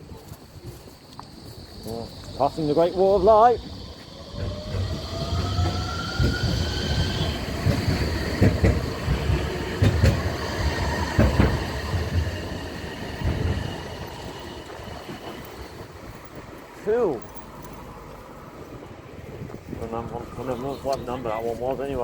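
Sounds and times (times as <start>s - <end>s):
tram motors whining: 0.2s - 22.0s
wheels knocking over rail joints: 3.2s - 12.6s.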